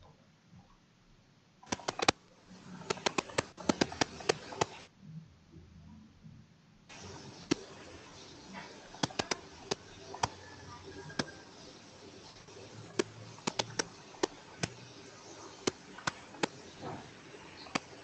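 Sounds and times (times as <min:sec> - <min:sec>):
faint steady hiss: 0:00.0 - 0:18.0
computer clicks: 0:01.7 - 0:04.9, 0:09.0 - 0:10.4, 0:13.0 - 0:14.8.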